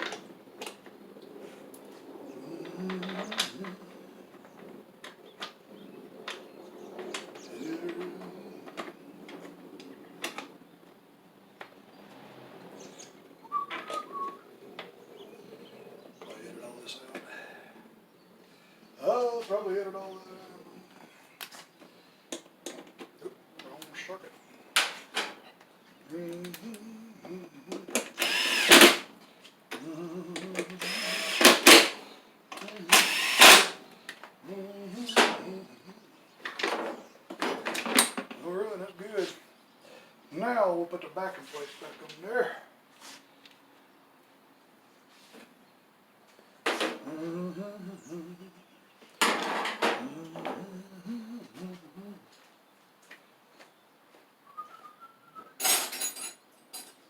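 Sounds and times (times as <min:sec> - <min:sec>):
power tool spinning up and down: 0:27.9 - 0:29.1, 0:30.4 - 0:32.0, 0:32.6 - 0:33.8.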